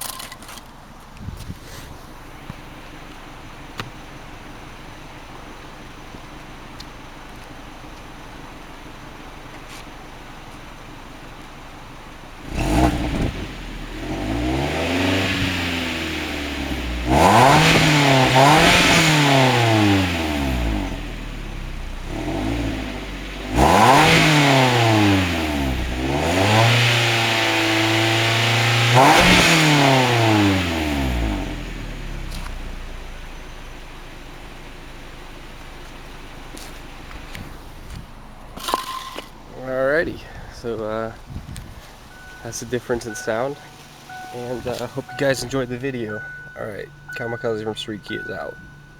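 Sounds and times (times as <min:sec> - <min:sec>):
car engine idling and revving: 0:00.0 - 0:48.9.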